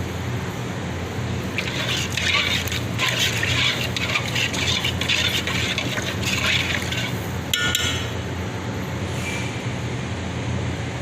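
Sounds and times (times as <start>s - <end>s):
steady low hum: 0.0s - 11.0s
liquid swishing in a pot: 1.4s - 7.6s.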